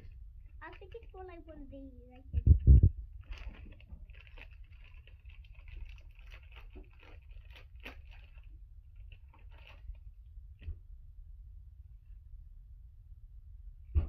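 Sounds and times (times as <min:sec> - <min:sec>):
plastic packaging crinkling: 0:00.4 - 0:02.3, 0:03.1 - 0:10.2
plastic toys clicking: 0:00.6 - 0:01.4, 0:03.2 - 0:08.5.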